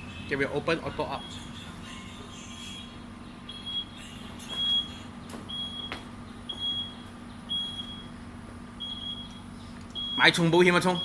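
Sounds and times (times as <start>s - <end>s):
steady low hum: 0.0s - 11.0s
tailgate warning beeps: 4.6s - 8.1s, 8.8s - 9.4s.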